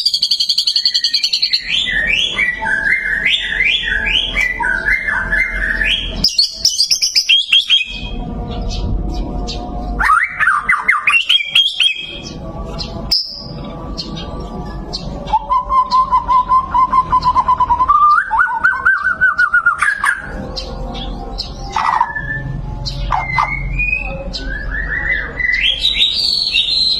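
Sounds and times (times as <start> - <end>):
bird singing whistled phrases: 0.0 - 8.2, 10.0 - 12.2, 15.2 - 20.3, 21.7 - 26.9.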